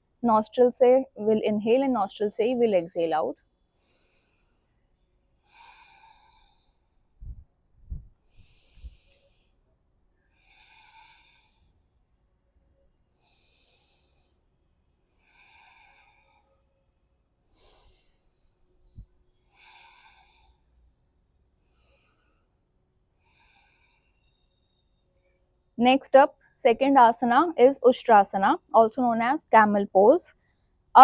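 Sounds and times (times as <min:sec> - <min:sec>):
woman breathing through nose: 0:03.8 - 0:04.8, 0:05.4 - 0:07.0, 0:08.2 - 0:09.6, 0:10.3 - 0:11.8, 0:13.1 - 0:16.7, 0:17.4 - 0:21.0, 0:21.6 - 0:22.6, 0:23.2 - 0:24.6
soft low bumps: 0:07.2 - 0:08.2.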